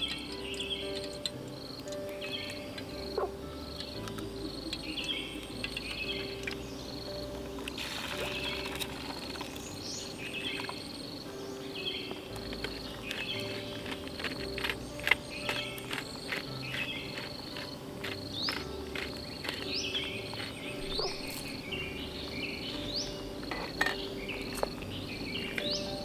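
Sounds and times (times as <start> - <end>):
high chirping animal calls: 0.0 - 7.5, 9.3 - 26.0
sharp clicks and pops: 12.3 - 21.6.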